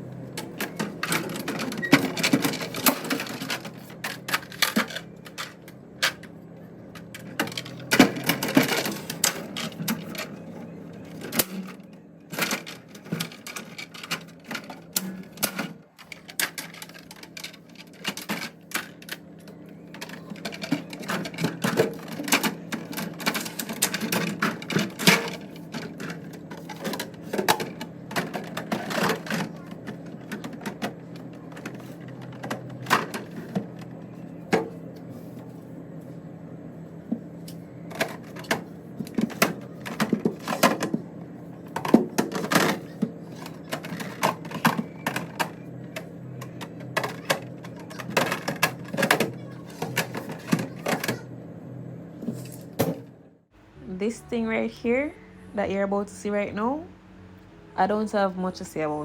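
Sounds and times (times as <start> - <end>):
food containers clicking and knocking: 0.4 - 6.4, 11.0 - 33.9, 37.9 - 51.2.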